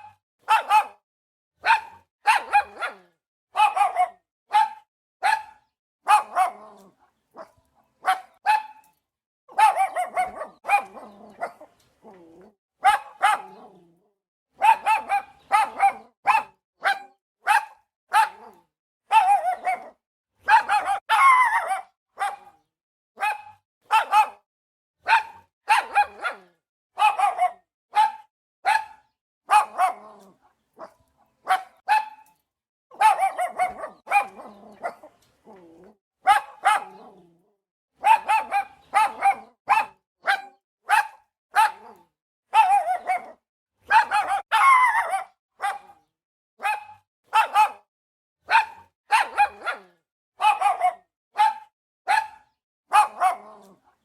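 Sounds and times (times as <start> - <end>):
dog barking: 0.0 - 1.0, 1.6 - 12.2, 12.8 - 13.9, 14.5 - 37.3, 38.0 - 54.0.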